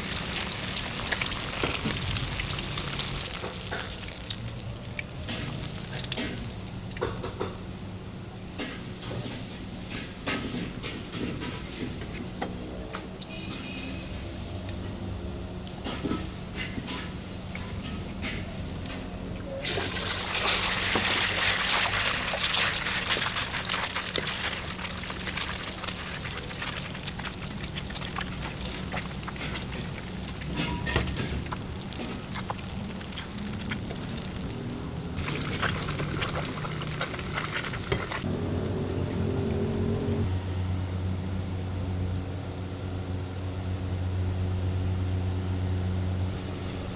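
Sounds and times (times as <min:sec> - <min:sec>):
food sizzling in a wok: 0:00.0 - 0:09.9, 0:19.6 - 0:38.3
metal spatula scraping wok: 0:26.1 - 0:32.3.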